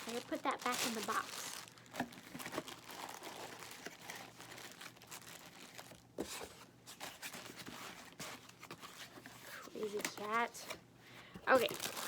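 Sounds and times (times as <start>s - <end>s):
packaging rustling and crinkling: 0.0s - 10.8s, 11.5s - 12.0s.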